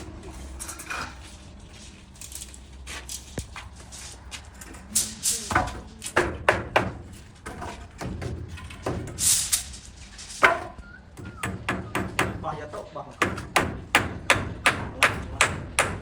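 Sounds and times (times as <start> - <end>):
scrapes and knocks: 0.6 - 11.5
scraping hisses: 9.1 - 10.4.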